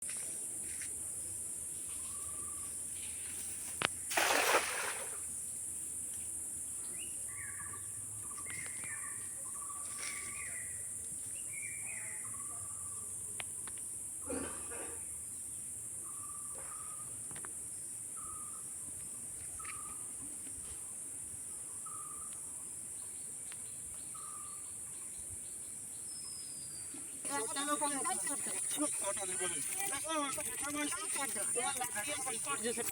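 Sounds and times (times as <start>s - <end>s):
bird chirps: 6.8s - 13.7s, 23.0s - 32.9s
high insect drone: 27.3s - 32.9s.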